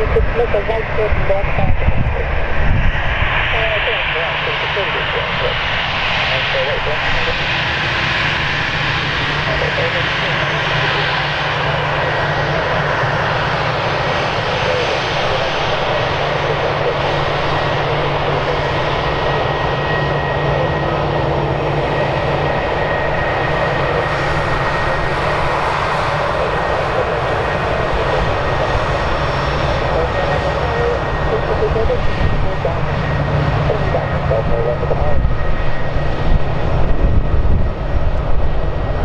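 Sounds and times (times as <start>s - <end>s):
jet engines running: 0.0s - 39.0s.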